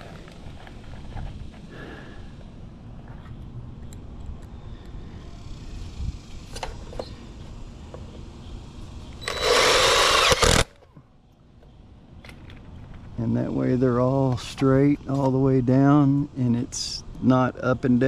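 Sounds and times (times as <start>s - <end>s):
power drill driving screw: 9.2s - 10.7s.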